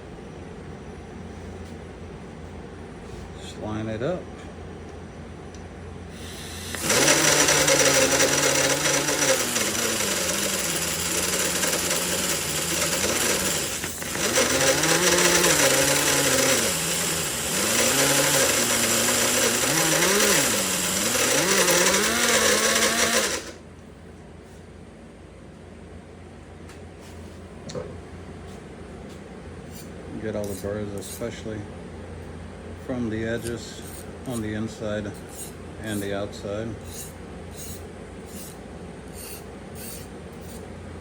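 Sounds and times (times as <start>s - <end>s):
pneumatic angle grinder grinding: 6.2s - 23.6s, 35.2s - 36.1s, 36.9s - 40.6s.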